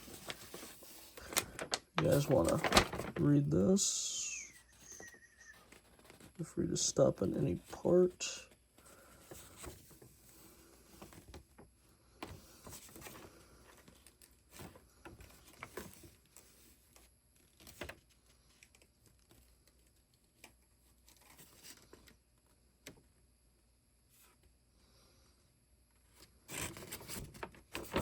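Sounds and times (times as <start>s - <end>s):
paper pages rustling: 0.0s - 8.2s, 8.8s - 11.4s, 12.2s - 22.2s, 26.5s - 28.0s.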